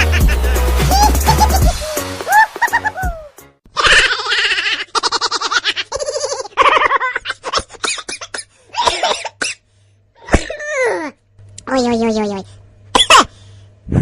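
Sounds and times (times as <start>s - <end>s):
person laughing: 0.0s - 8.0s.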